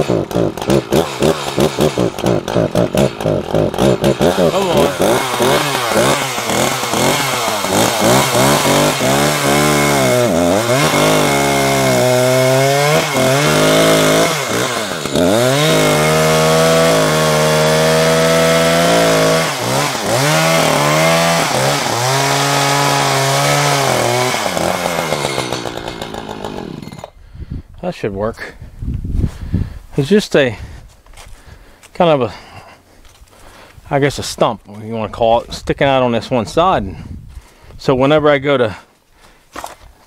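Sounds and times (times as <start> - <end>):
chainsaw cutting wood: 0.0 - 27.2.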